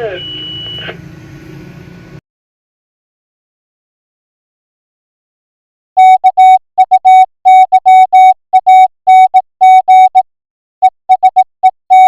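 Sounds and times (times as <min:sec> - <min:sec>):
morse code tone: 0:00.0 - 0:00.8, 0:06.0 - 0:10.2, 0:10.8 - 0:12.0.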